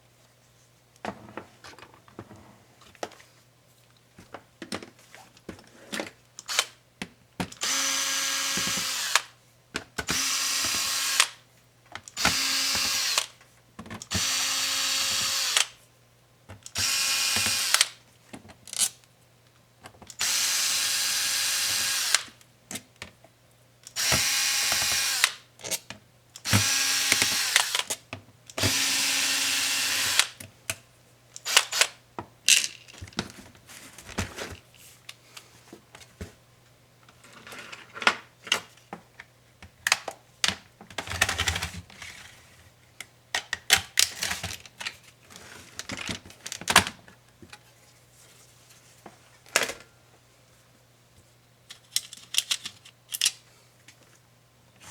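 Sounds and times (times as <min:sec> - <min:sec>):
electric screwdriver running: 0:07.6 - 0:09.3, 0:10.1 - 0:11.4, 0:12.2 - 0:13.3, 0:14.1 - 0:15.7, 0:16.8 - 0:18.0, 0:20.2 - 0:22.3, 0:24.0 - 0:25.4, 0:26.4 - 0:27.9, 0:28.6 - 0:30.4, 0:31.4 - 0:31.9
screws and plastic parts rattling: 0:51.7 - 0:53.4.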